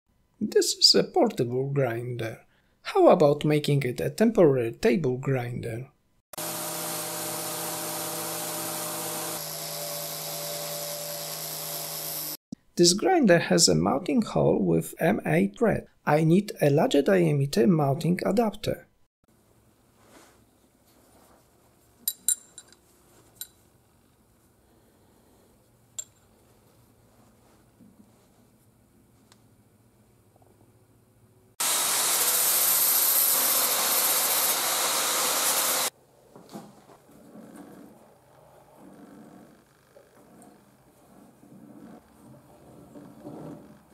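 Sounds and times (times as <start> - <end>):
angle grinder running: 6.4 - 12.4, 31.6 - 35.9
power tool hissing and whining: 6.4 - 12.4, 31.6 - 35.9.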